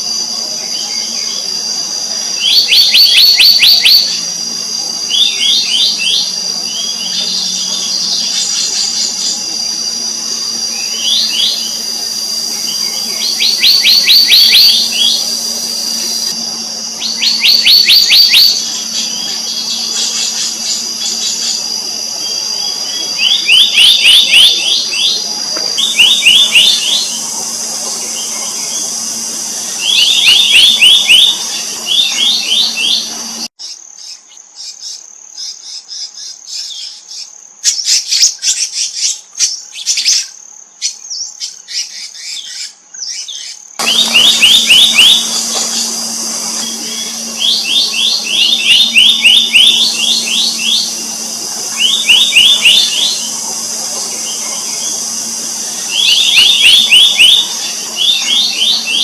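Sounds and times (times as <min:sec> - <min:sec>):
steady high drone: 0:00.0 - 0:33.6, 0:43.8 - 0:59.0
bird calling ringing notes: 0:02.3 - 0:33.5, 0:43.8 - 0:59.0
scattered high chirps: 0:02.3 - 0:33.5, 0:43.8 - 0:59.0.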